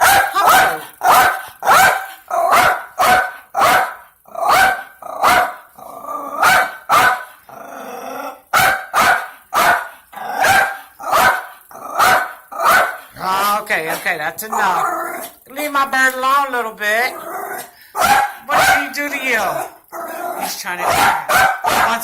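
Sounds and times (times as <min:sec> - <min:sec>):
dog growling: 0:00.0 - 0:02.6, 0:04.2 - 0:08.5, 0:10.0 - 0:15.5, 0:17.0 - 0:22.0
small dog barking: 0:00.0 - 0:05.6, 0:06.4 - 0:07.3, 0:08.5 - 0:13.0, 0:18.0 - 0:18.9, 0:20.8 - 0:22.0.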